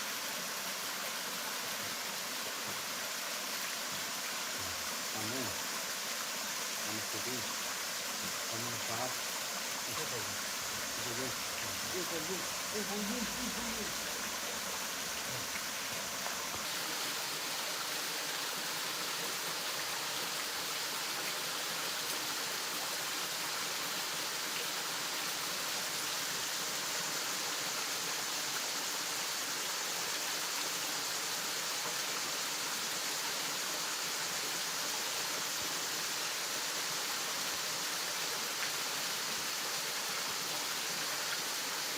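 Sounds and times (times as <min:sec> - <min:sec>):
waterfall rushing: 0:01.8 - 0:25.4.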